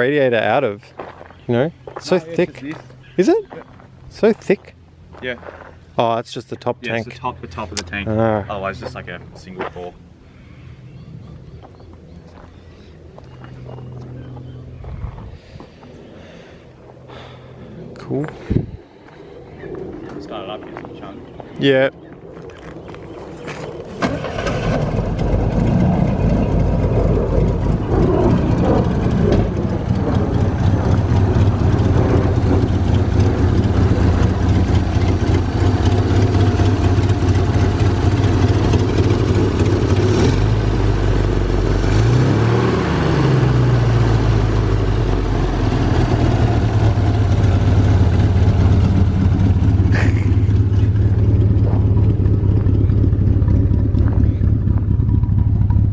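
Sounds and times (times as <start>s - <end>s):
car engine cranking and idling: 0.0s - 10.3s, 23.5s - 55.9s
engine revving: 23.8s - 55.9s.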